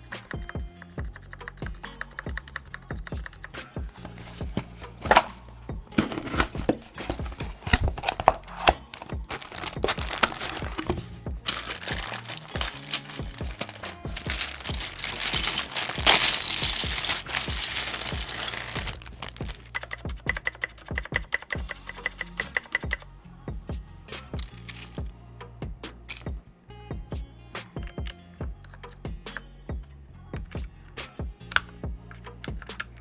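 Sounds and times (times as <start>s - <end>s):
background music: 0.0s - 33.0s
packaging crinkling and rustling: 3.9s - 19.9s
plastic parts clicking and knocking: 3.9s - 23.0s.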